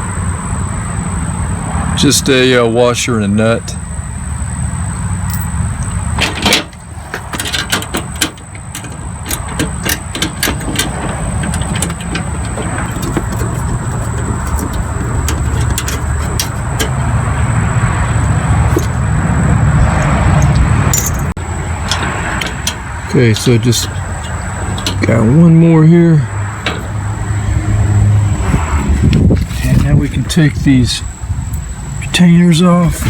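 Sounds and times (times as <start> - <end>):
steady low rumble: 5.2 - 32.1
wrench clicking and clinking: 5.3 - 5.6, 20.4 - 25.1.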